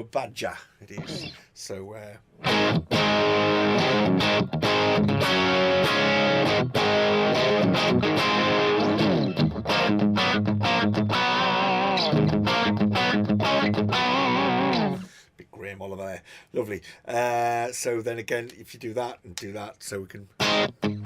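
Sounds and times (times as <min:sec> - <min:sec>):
electric guitar notes and chords: 0:01.0 - 0:01.4, 0:02.4 - 0:15.1, 0:20.4 - 0:21.0.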